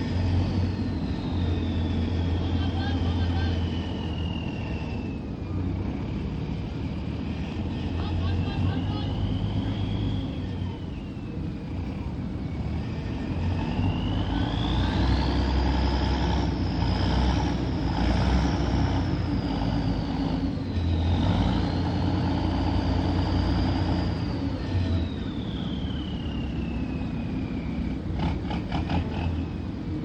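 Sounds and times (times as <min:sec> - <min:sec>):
diesel engine droning: 0:00.0 - 0:30.0.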